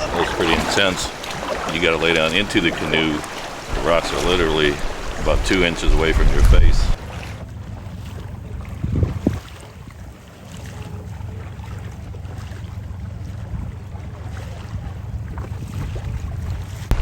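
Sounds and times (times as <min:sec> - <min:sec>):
faint water sounds: 0:00.0 - 0:17.0
wind noise on microphone: 0:04.7 - 0:07.1, 0:08.5 - 0:09.5.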